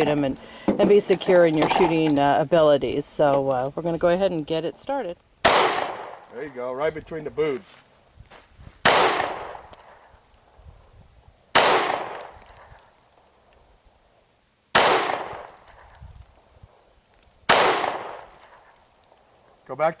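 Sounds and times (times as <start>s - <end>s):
pistol shots with echo: 5.4s - 6.4s, 8.8s - 10.1s, 11.5s - 12.8s, 14.8s - 15.8s, 17.5s - 18.7s.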